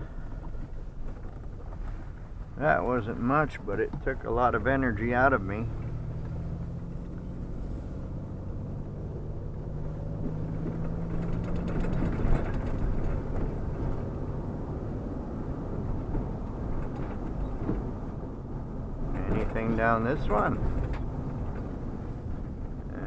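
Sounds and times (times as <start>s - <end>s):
road noise: 0.0s - 23.0s.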